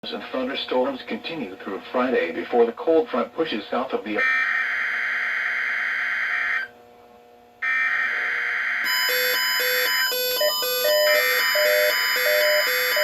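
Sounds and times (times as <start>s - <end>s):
steady alarm tone: 4.2s - 6.7s, 7.6s - 13.0s.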